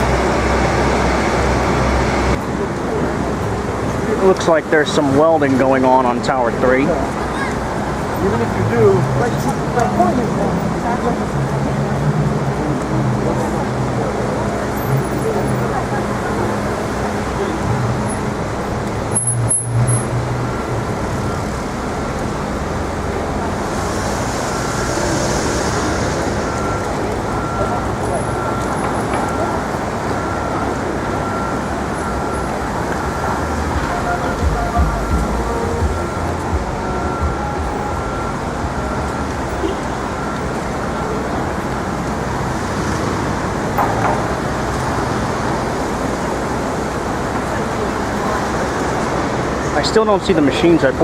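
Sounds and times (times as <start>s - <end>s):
low engine hum: 0.0s - 49.8s
street traffic: 0.0s - 51.0s
hiss: 23.8s - 26.6s
short high-pitched sound: 33.0s - 40.4s.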